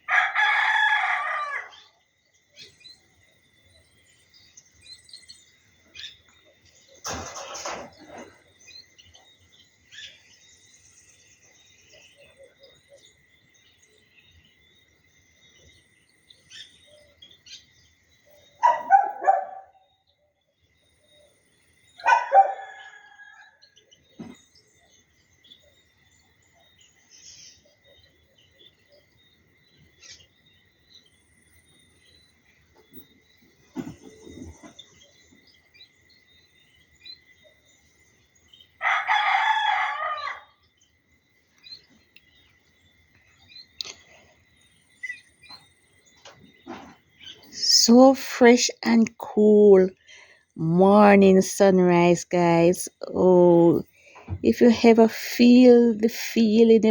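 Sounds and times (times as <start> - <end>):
bird chirps: 1.7 - 7.1, 7.9 - 22.8, 40.3 - 56.9
dog barking: 18.6 - 19.8, 22.0 - 22.7.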